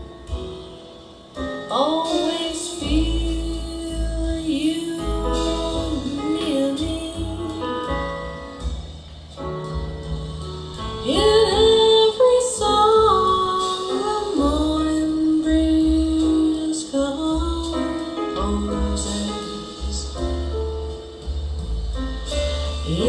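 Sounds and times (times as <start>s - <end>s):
instrumental accompaniment with bass: 0.0s - 23.0s
woman singing slow ballad: 1.7s - 8.3s, 11.0s - 20.6s, 22.6s - 23.0s.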